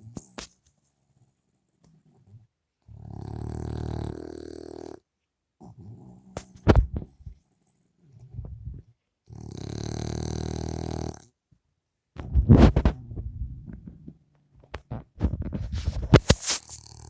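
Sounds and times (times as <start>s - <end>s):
soft dog noises: 0.0s - 11.6s, 12.2s - 17.0s
dog snoring loudly: 2.9s - 5.0s, 9.3s - 11.3s, 16.7s - 17.0s.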